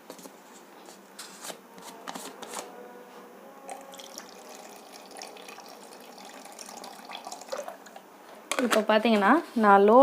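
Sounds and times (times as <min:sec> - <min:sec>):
water trickling into container: 0:03.7 - 0:08.1.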